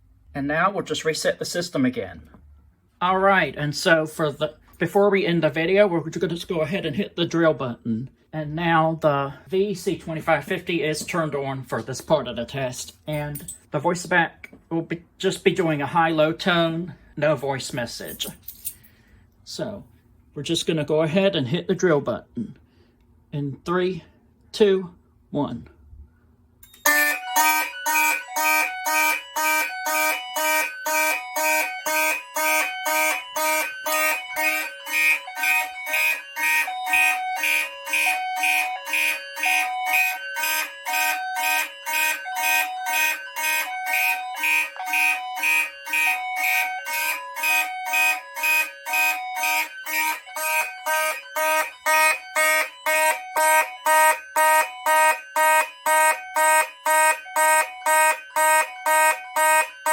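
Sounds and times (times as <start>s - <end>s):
alternating high-low alarm tone: 26.6s - 59.9s
fire alarm horns pulsing: 26.6s - 59.9s.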